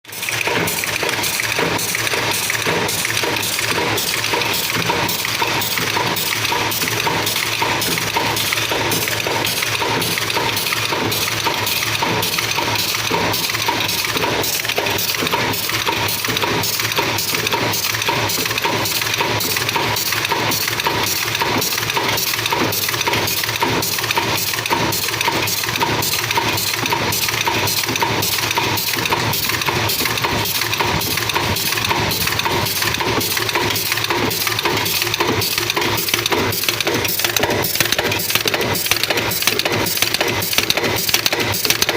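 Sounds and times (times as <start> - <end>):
fast metallic machine clatter: 0.0 - 41.9
machine hum: 28.0 - 41.9.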